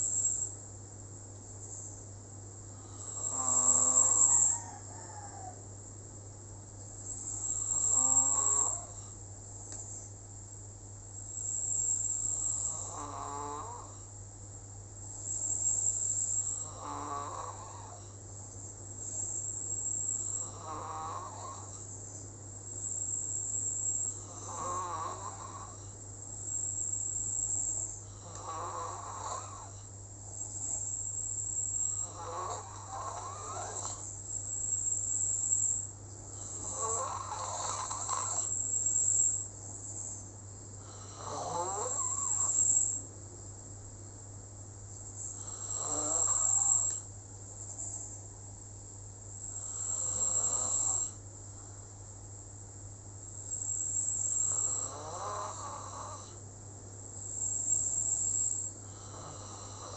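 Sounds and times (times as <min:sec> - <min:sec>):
person snoring: 0:02.8 - 0:05.5, 0:07.3 - 0:09.2, 0:12.3 - 0:14.1, 0:16.4 - 0:18.1, 0:20.2 - 0:21.8, 0:24.2 - 0:25.9, 0:28.1 - 0:29.9, 0:31.9 - 0:34.1, 0:36.4 - 0:38.6, 0:40.8 - 0:42.9, 0:45.3 - 0:47.1, 0:49.5 - 0:51.2, 0:54.3 - 0:56.4, 0:58.9 - 0:59.9.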